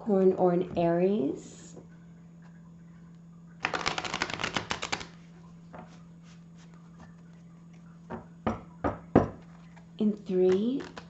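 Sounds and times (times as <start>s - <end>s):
cards being shuffled: 3.6s - 7.8s, 9.4s - 11.0s.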